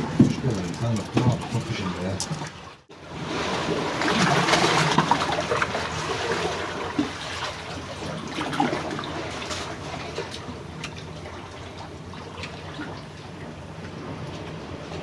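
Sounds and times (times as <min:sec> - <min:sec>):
sea water sloshing among rocks: 0:00.0 - 0:15.0.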